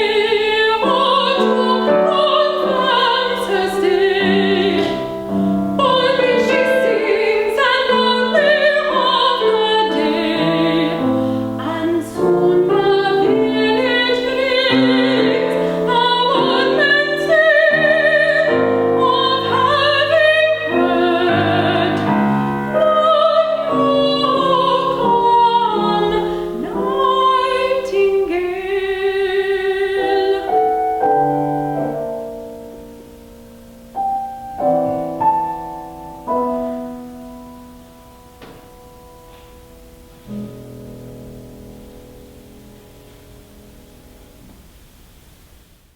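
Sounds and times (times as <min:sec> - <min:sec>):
woman singing with vibrato: 0:00.0 - 0:32.0
piano chords: 0:00.0 - 0:45.4.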